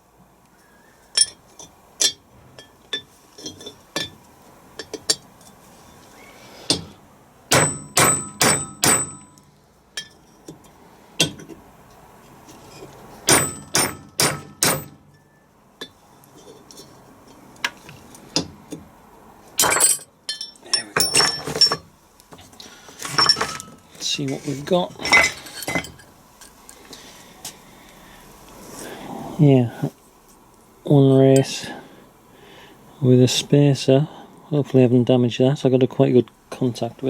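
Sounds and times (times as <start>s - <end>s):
hammer striking metal: 7.5s - 9.4s, 13.3s - 15.3s.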